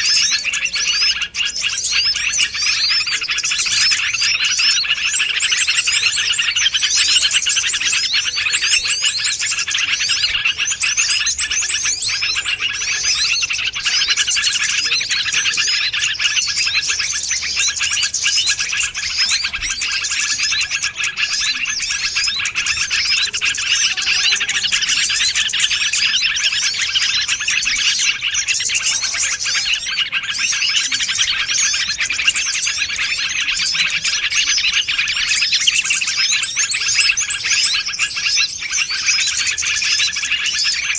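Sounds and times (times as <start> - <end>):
small birds chirping chorus: 0.0 - 40.9.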